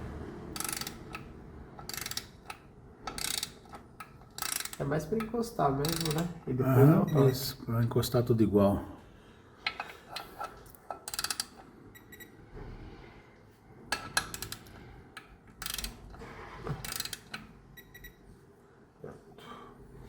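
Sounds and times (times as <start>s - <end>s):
ratchet wrench clicking: 0.6s - 6.3s, 11.0s - 11.6s, 15.6s - 16.1s, 16.8s - 17.4s.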